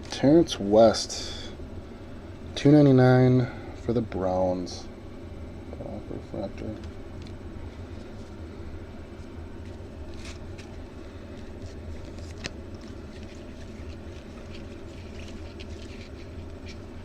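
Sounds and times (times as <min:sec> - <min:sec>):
steady low hum: 0:00.0 - 0:17.0
trading cards scraping and clicking: 0:09.6 - 0:17.0.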